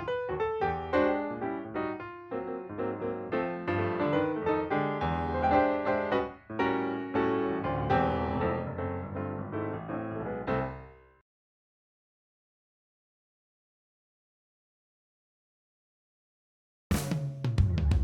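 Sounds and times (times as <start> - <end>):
piano background music: 0.0 - 11.2.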